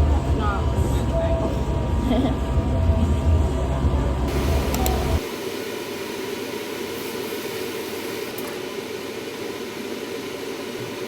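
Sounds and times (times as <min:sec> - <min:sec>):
food sizzling hiss: 0:04.3 - 0:11.0.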